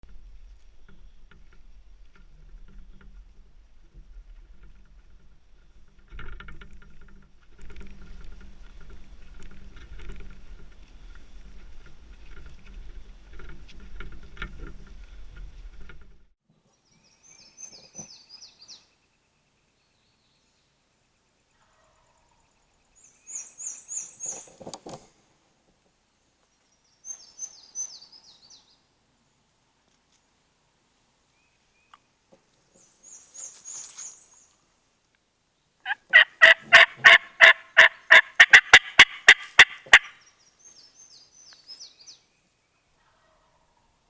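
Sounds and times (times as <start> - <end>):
bird calling: 35.8 - 43.6.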